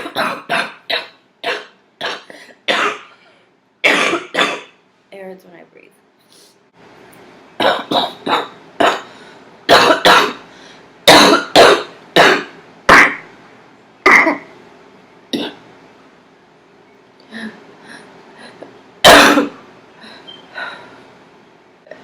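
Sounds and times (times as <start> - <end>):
person coughing: 0.0 - 3.1, 3.8 - 4.8, 7.6 - 9.1, 9.7 - 10.4, 11.1 - 13.2, 19.0 - 19.6.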